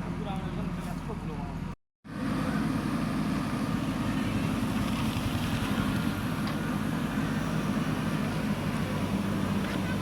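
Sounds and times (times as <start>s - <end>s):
diesel engine running: 0.0s - 10.0s.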